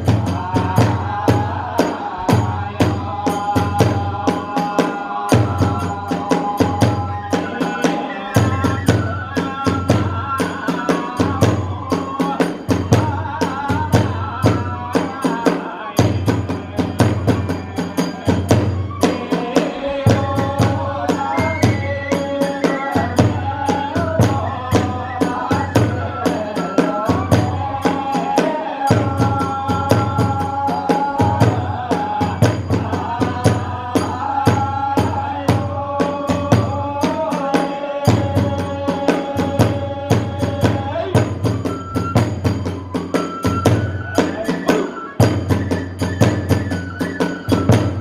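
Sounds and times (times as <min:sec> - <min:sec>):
deep drum beats: 0:00.0 - 0:07.6
fast drumming: 0:00.0 - 0:48.0
flute melody: 0:06.6 - 0:13.3, 0:17.1 - 0:34.4, 0:40.4 - 0:48.0.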